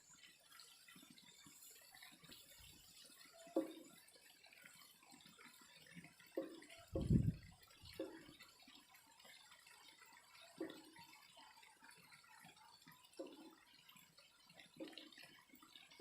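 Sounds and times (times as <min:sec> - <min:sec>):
water drops plopping: 0:06.4 - 0:08.3.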